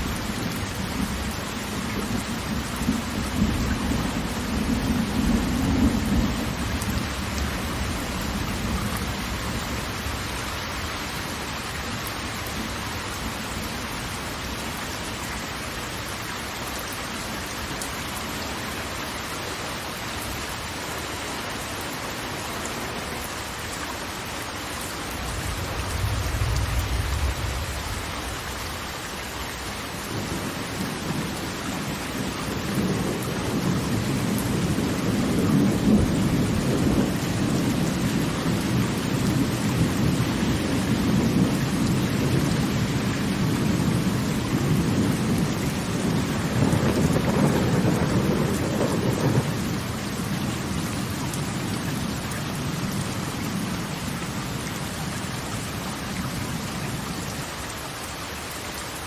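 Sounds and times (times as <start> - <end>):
low rolling rumble: 25.2 - 28.8.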